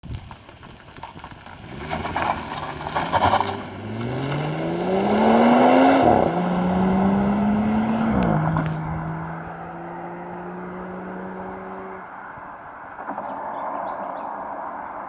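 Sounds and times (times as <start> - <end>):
gear upshift: 0.8 - 12.0
car accelerating hard past: 1.7 - 15.0.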